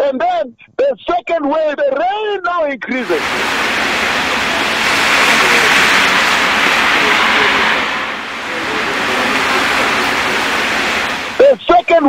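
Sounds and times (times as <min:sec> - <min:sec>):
heavy rain pouring: 0:03.0 - 0:12.0.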